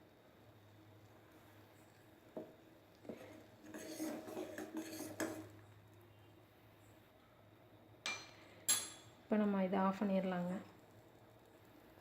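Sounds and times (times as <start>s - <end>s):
metal spoon scraping a pan: 3.2s - 5.6s.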